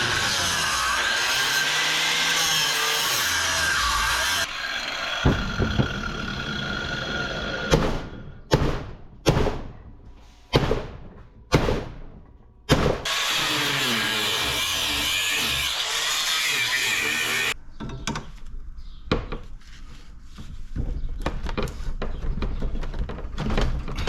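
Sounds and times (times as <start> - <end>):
power cutter cutting metal: 0.0 - 7.7, 13.0 - 17.6
knocks: 5.2 - 6.1
sharp bangs: 7.6 - 13.2.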